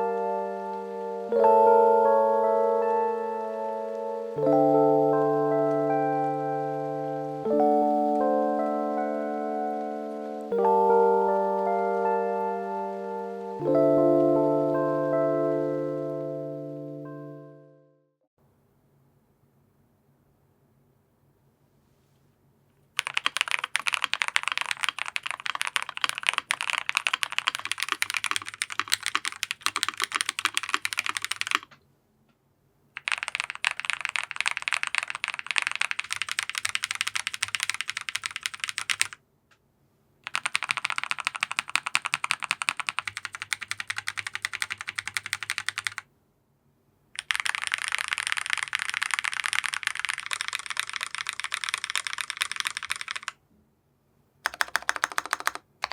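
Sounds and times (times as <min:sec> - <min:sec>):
mechanical keyboard typing: 0:23.0 - 0:31.7, 0:33.0 - 0:39.2, 0:40.2 - 0:46.0, 0:47.2 - 0:53.4, 0:54.4 - 0:55.9.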